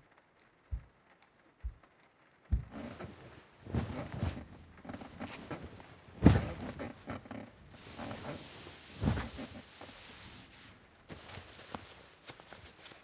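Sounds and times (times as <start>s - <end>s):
soft heavy thuds: 2.6s - 12.8s
light clatter and rustling: 2.6s - 13.0s.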